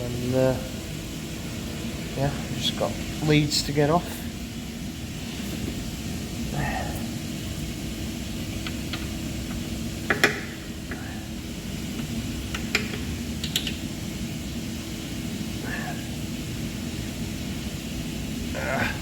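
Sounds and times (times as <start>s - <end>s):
steady mechanical hum: 0.0s - 19.0s
connectors clicking and knocking: 8.6s - 11.0s, 12.0s - 13.8s.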